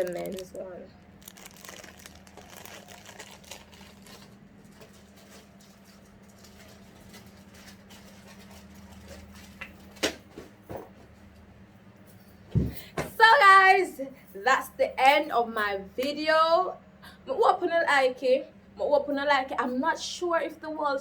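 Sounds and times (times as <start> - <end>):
packaging rustling: 0.0 - 10.0.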